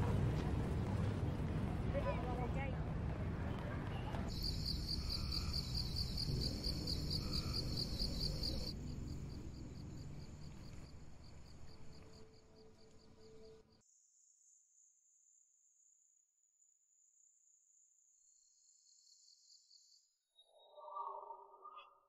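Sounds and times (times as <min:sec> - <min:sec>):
low background rumble: 0:00.0 - 0:11.3
crickets chirping: 0:04.3 - 0:21.9.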